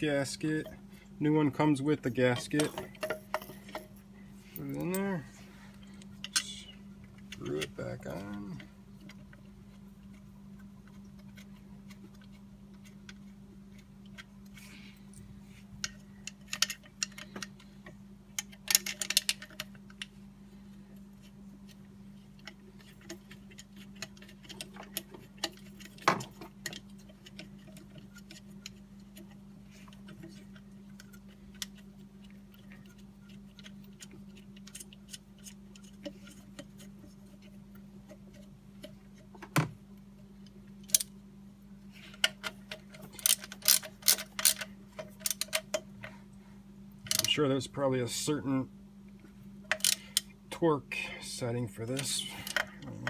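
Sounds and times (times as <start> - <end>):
steady low hum: 0.0 - 53.0
socket ratchet clicking: 43.2 - 45.6.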